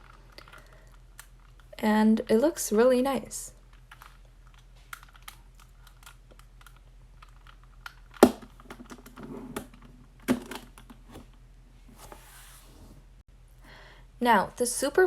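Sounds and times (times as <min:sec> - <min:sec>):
plastic puzzle cube clicking: 0:03.8 - 0:08.2.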